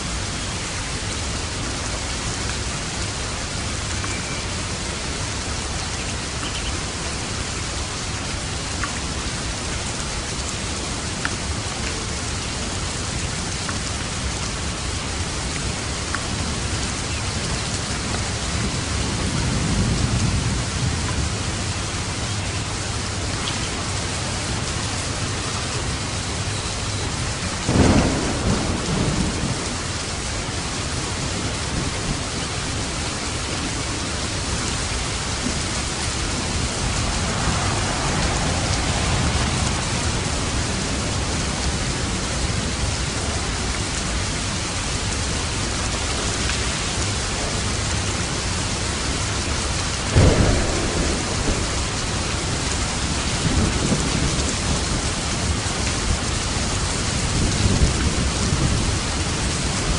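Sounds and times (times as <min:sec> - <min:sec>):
heavy rain: 0:00.0 - 0:59.9
distant thunder rumble: 0:26.0 - 0:44.2, 0:49.0 - 0:59.9
thunderclap: 0:27.6 - 0:29.9, 0:34.8 - 0:42.8, 0:50.0 - 0:55.6.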